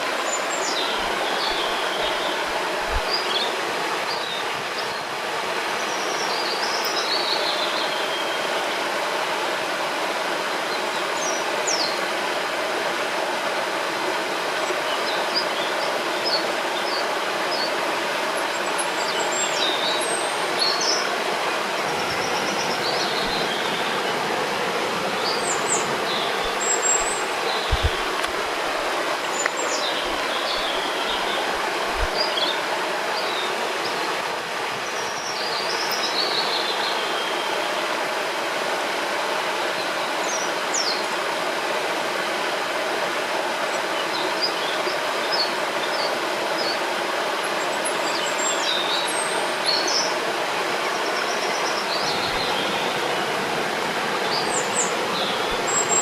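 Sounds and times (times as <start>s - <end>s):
river rushing: 0.0s - 56.0s
bird chirps and calls: 25.2s - 28.3s.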